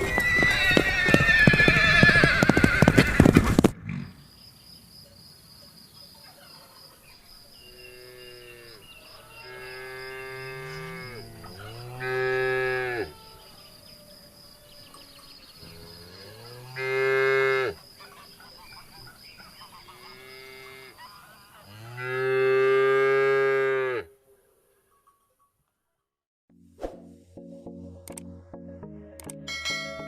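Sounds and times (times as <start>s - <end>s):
horse whinnying: 0.0s - 3.6s
horse hooves clip-clopping: 0.0s - 3.8s
cows mooing: 7.7s - 13.6s, 15.6s - 17.8s, 19.8s - 21.0s, 21.7s - 24.1s.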